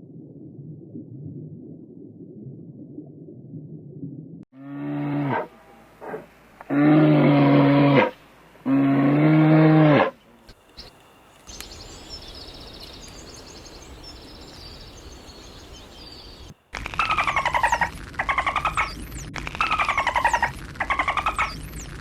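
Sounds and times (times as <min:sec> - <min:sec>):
cow mooing: 0:04.6 - 0:10.2
rapid pulsed animal calls: 0:10.0 - 0:21.9
faint bird chirps: 0:10.3 - 0:16.5
outdoor hiss: 0:10.3 - 0:16.7.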